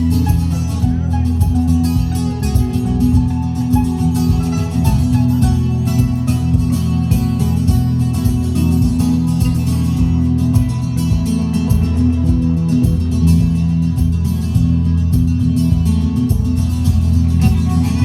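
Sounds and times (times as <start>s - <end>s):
music with guitars and heavy bass: 0.0s - 18.0s.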